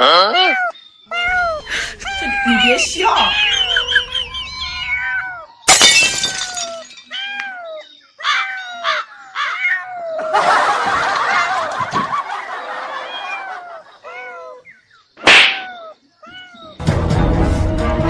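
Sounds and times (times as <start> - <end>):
cat meowing: 0.0 - 5.6, 6.4 - 10.3, 13.0 - 14.7, 15.4 - 16.8.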